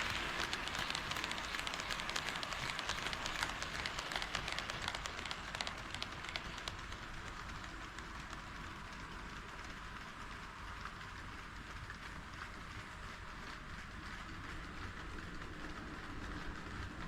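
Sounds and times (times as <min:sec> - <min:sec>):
light rolling hiss: 0:00.0 - 0:07.8
model train wheels clicking on rails: 0:00.0 - 0:17.0.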